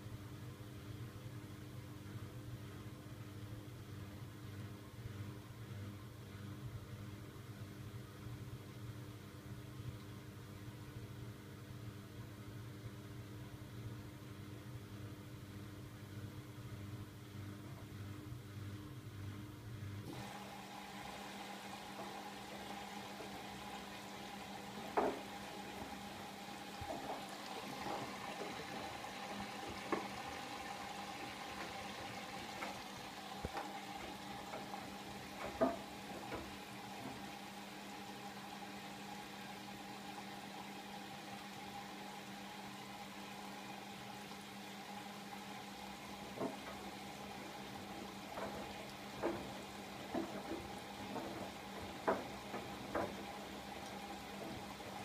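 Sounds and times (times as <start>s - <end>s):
washing machine motor hum: 0.0s - 55.0s
water sloshing in drum: 20.1s - 55.0s.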